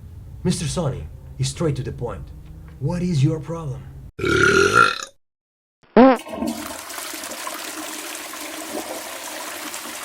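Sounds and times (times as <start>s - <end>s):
toilet flushing: 6.2s - 10.0s.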